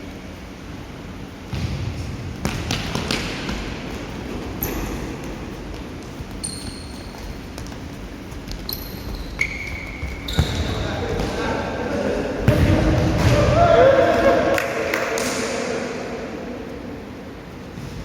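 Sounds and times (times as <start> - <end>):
ball kicked and bouncing: 1.5 - 11.4
sneakers squeaking on floor: 3.5 - 12.6.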